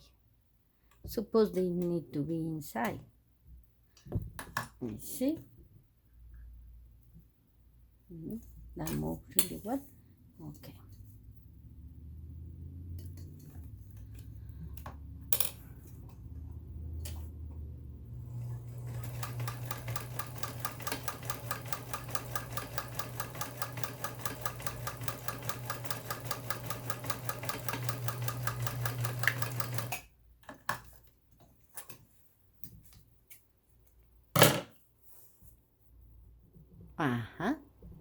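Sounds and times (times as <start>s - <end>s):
sewing machine running: 18.2s - 30.0s.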